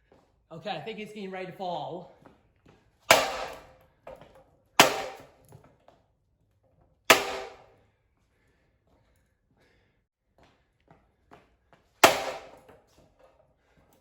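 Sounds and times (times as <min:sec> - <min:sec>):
blows smashing ceiling fan: 0:07.1 - 0:07.7.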